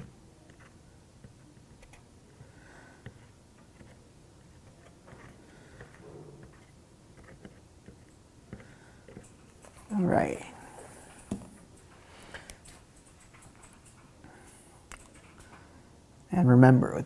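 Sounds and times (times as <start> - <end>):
small clicks and taps of parts: 11.2 - 15.7.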